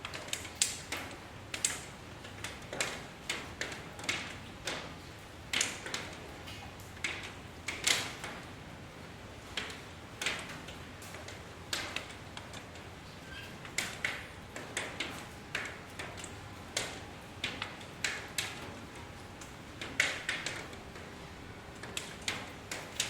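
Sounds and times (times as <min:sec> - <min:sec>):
rain drops tapping hard surface: 0:00.1 - 0:23.0.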